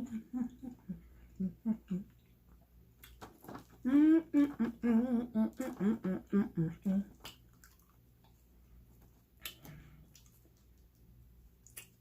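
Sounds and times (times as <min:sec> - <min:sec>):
mouth clicks from chewing: 0:09.4 - 0:10.9.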